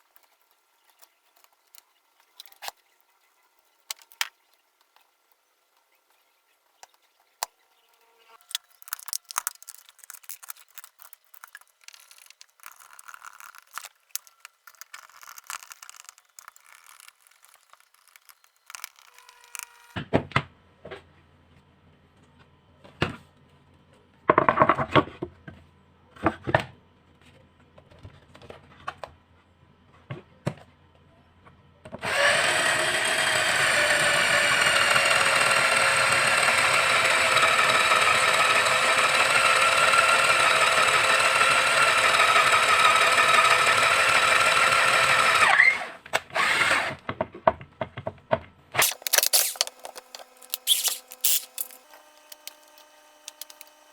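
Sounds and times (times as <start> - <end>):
cordless drill motor running: 8.8 - 20.0, 32.0 - 47.0, 48.8 - 53.9
handling clicks and knocks: 48.8 - 53.8.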